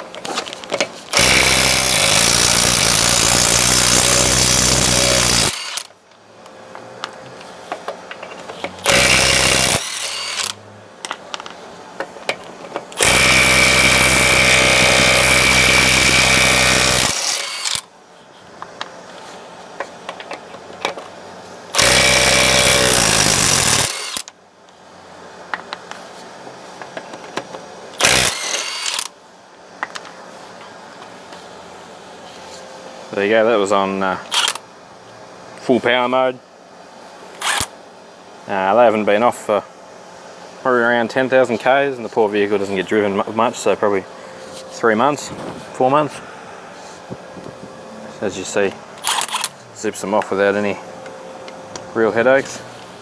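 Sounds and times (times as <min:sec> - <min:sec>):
impact wrench hammering: 0:08.8 - 0:10.5, 0:13.0 - 0:17.8.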